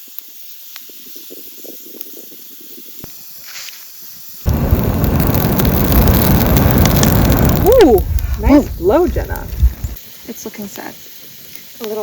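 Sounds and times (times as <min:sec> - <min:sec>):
campfire hissing and crackling: 0:00.0 - 0:12.0
person blowing on embers: 0:03.4 - 0:10.1.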